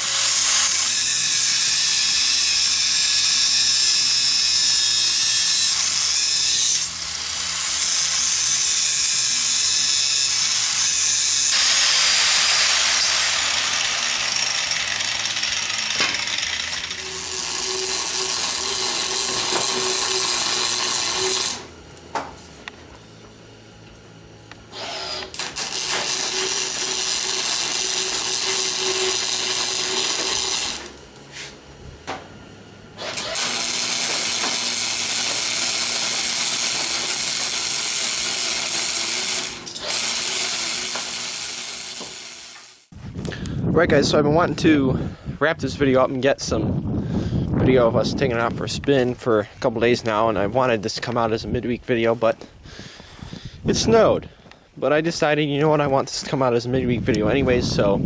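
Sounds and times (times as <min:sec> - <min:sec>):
power tool cutting steel: 0:00.0 - 0:21.8, 0:24.7 - 0:31.6, 0:33.0 - 0:42.9.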